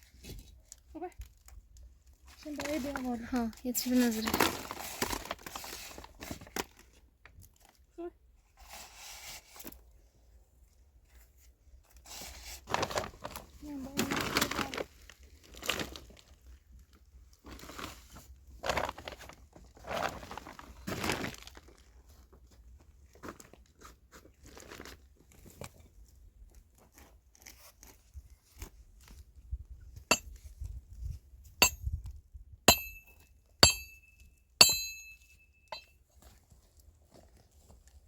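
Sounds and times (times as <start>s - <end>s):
glass or china clinking: 32.7s - 35.9s.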